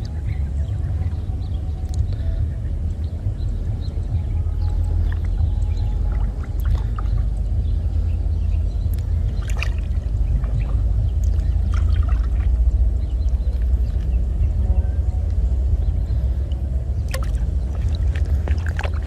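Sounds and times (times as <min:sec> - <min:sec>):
steady low rumble: 0:00.0 - 0:19.0
water splashing and trickling: 0:00.0 - 0:19.0.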